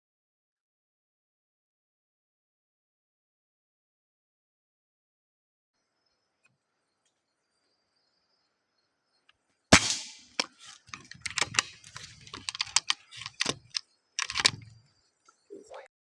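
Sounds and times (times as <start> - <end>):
air rifle shot: 9.7 - 10.5
clicks crackles and rustles: 10.3 - 15.4.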